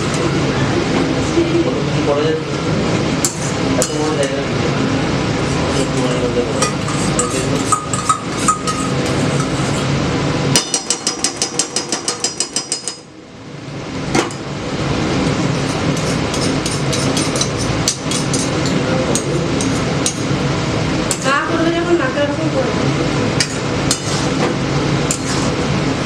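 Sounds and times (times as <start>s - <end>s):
kitchen noise: 5.4s - 13.1s, 15.5s - 20.4s, 23.4s - 25.6s.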